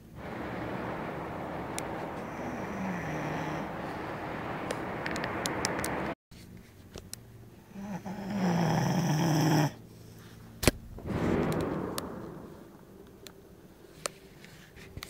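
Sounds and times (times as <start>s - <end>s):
man snoring: 7.8s - 9.8s.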